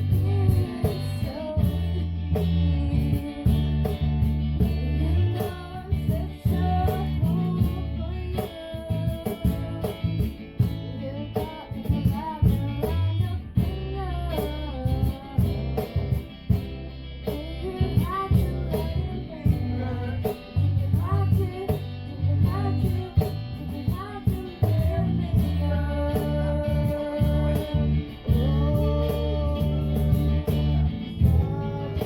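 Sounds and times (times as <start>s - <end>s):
person singing: 0.0s - 16.2s, 17.3s - 32.0s
acoustic guitar strumming: 0.0s - 32.0s.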